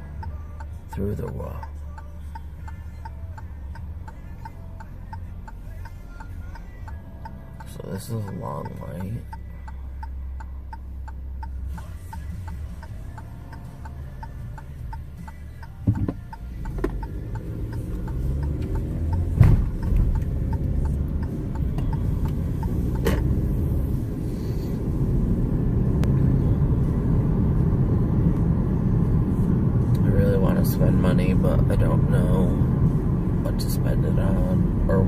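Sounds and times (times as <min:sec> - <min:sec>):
car engine and road rumble: 0:00.0 - 0:35.0
even ticking: 0:00.1 - 0:23.9.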